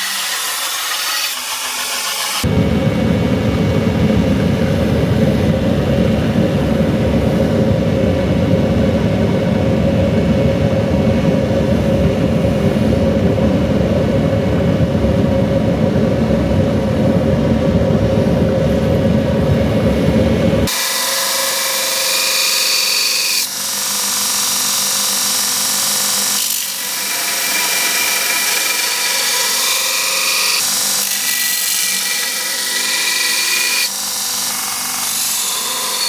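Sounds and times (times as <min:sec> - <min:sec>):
power tool running: 0:00.0 - 0:02.6, 0:20.6 - 0:36.0.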